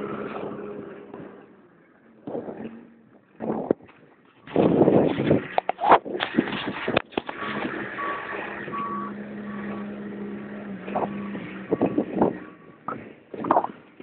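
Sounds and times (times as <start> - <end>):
engine hum: 0.0 - 14.0
reversing alarm beeping: 7.3 - 13.0.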